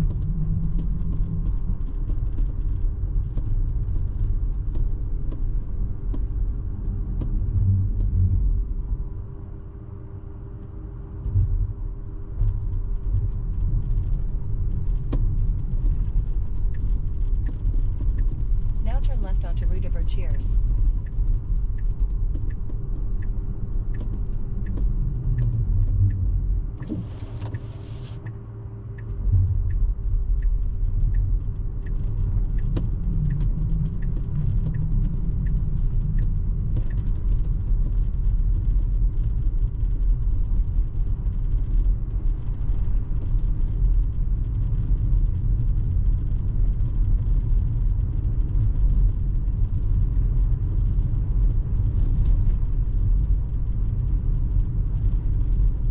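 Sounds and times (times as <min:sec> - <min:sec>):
road and tyre rumble: 0:00.0 - 0:55.9
turn signal ticking: 0:14.7 - 0:38.8.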